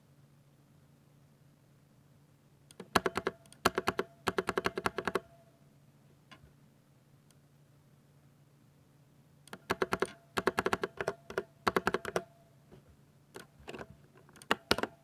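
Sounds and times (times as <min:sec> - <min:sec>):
mechanical keyboard typing: 0:02.7 - 0:05.3, 0:09.5 - 0:12.3, 0:13.4 - 0:15.0.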